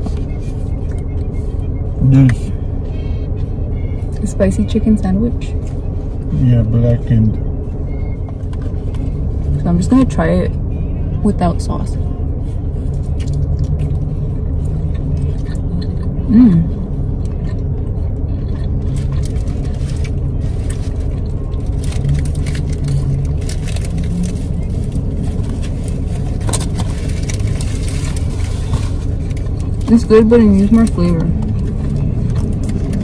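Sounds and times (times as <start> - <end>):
car cabin engine rumble: 0.0 - 33.0
close-up chewing: 12.8 - 29.9, 30.5 - 33.0.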